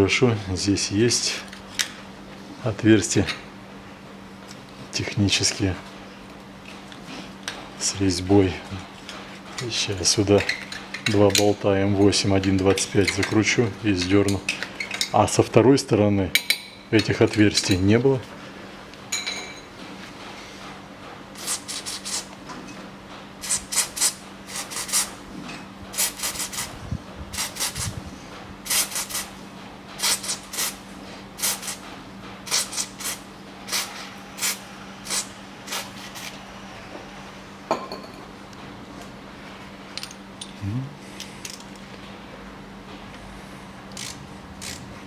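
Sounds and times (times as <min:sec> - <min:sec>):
hand wrench clicking: 0:43.9 - 0:44.9.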